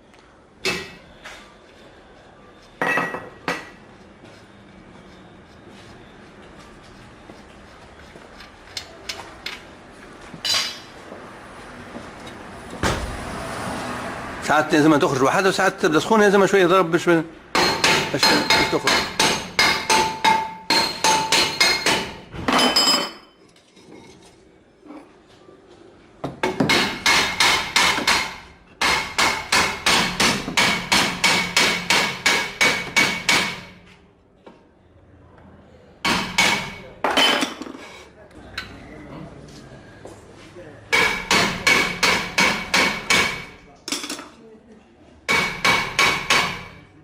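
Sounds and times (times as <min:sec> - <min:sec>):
metal tools clinking and clanking: 0:10.4 - 0:10.9
heavy metal knock: 0:12.8 - 0:13.4.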